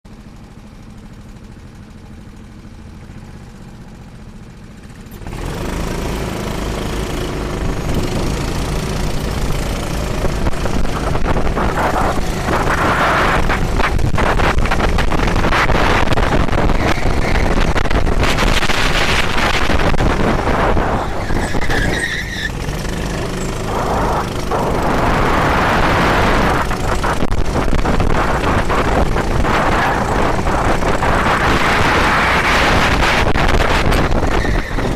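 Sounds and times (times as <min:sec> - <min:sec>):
wind rush and vehicle rumble: 0:03.1 - 0:34.9.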